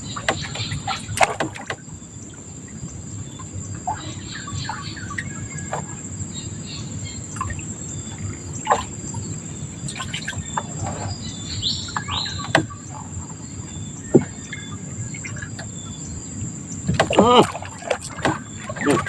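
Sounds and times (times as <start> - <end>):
insects droning: 0.0 - 19.0
bird chirps: 3.3 - 16.2.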